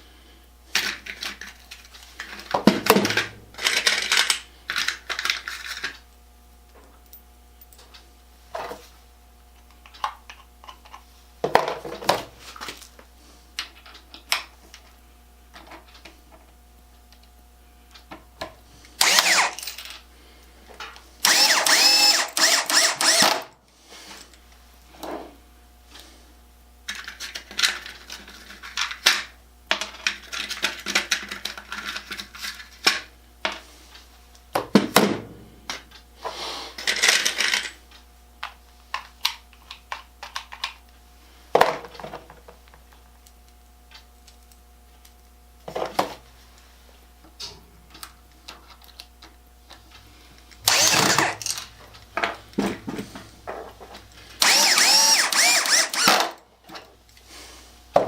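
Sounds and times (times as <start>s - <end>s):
power drill driving screws: 19.0s - 19.8s, 21.2s - 23.5s, 50.6s - 51.6s, 54.4s - 56.4s
screws and metal hardware clinking: 19.0s - 20.0s, 21.3s - 23.4s, 50.7s - 51.7s, 54.4s - 56.3s.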